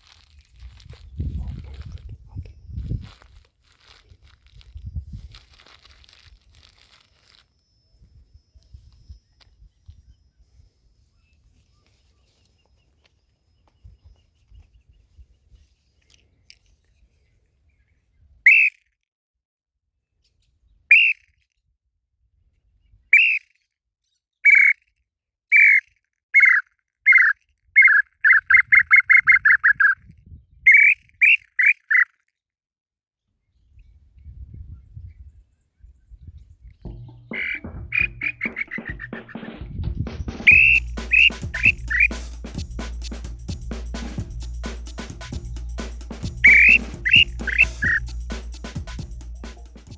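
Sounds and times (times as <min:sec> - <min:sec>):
bird whistled song: 0:18.4 - 0:18.8, 0:20.9 - 0:21.3, 0:23.1 - 0:23.5, 0:24.5 - 0:24.8, 0:25.5 - 0:25.8, 0:26.4 - 0:32.1, 0:33.8 - 0:42.2, 0:46.3 - 0:48.2.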